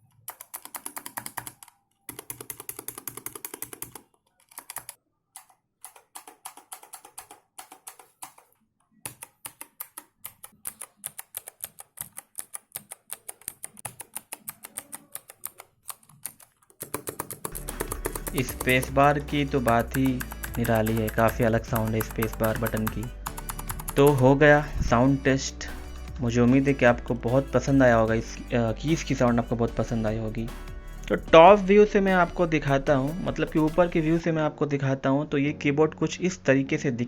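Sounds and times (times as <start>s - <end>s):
clicky mechanical keyboard typing: 0.0s - 24.7s.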